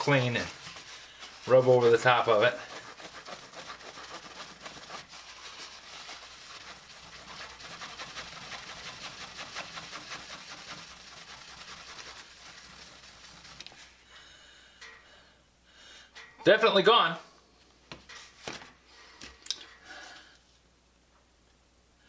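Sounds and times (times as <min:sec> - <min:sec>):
faint handling sounds: 0:00.0 - 0:07.2
cloth rag scrubbing plastic: 0:00.0 - 0:14.0.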